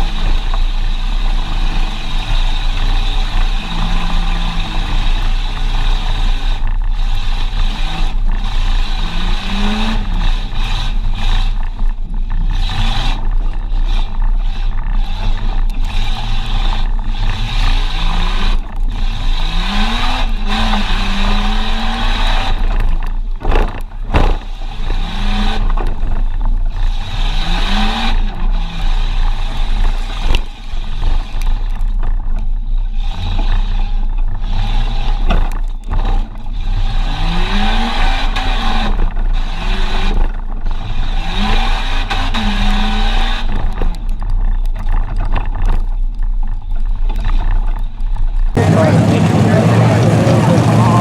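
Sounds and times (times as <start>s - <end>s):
truck engine revving: 0.0s - 31.9s, 32.8s - 44.2s, 48.5s - 51.0s
knocks and clatter of truck: 22.4s - 27.0s, 35.1s - 36.6s.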